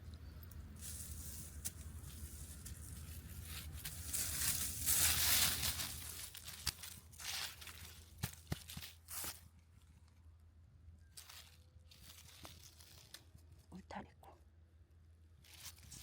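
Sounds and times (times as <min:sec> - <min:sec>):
rustling and tearing: 0:00.8 - 0:09.4, 0:11.2 - 0:13.6, 0:15.4 - 0:16.0.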